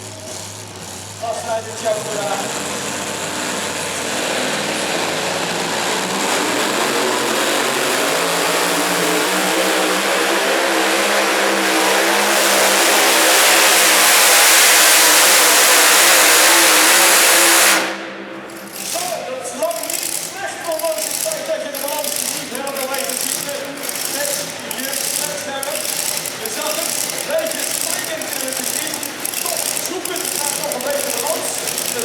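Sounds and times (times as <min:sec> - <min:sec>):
engine running hard: 0:00.0 - 0:32.0.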